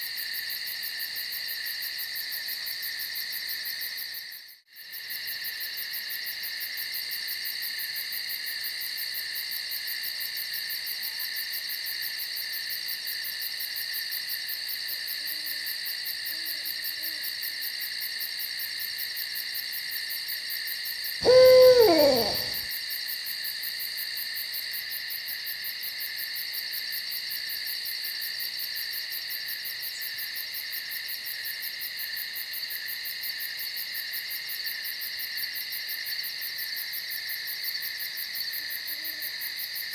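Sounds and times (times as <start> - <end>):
faint low calls: 21.2 - 22.6
night insects chirring: 21.2 - 22.6
owl call: 21.2 - 22.7.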